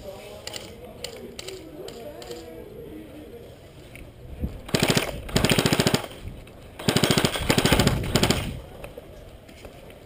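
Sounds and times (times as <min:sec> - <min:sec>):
airsoft rifle full-auto bursts: 0:04.7 - 0:06.2, 0:06.8 - 0:08.5.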